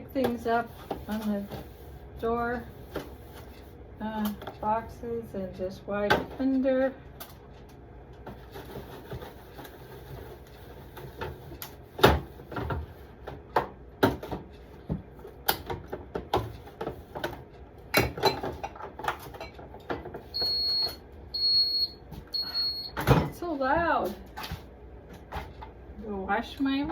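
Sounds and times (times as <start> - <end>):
refrigerator door alarm beeping: 20.3 - 23.1.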